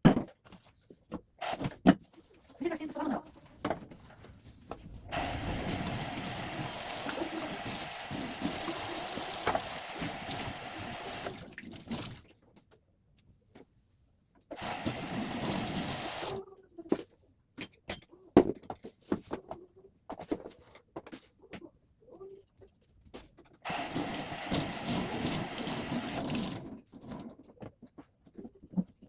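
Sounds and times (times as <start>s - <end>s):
water running from a tap: 5.0s - 12.2s, 14.6s - 16.4s, 23.7s - 27.2s.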